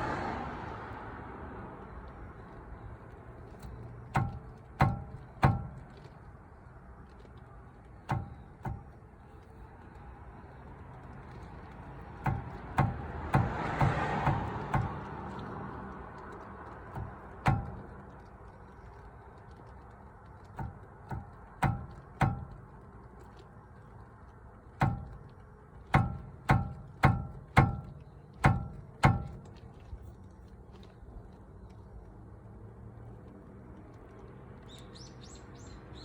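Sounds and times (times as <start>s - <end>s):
brake caliper metallic clicks: 3.4s - 6.3s, 7.0s - 15.6s, 16.2s - 24.0s, 24.6s - 30.1s.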